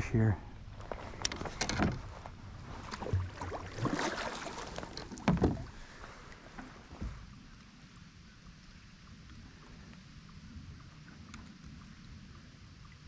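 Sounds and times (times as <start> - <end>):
knocks against kayak hull: 5.1 - 5.7.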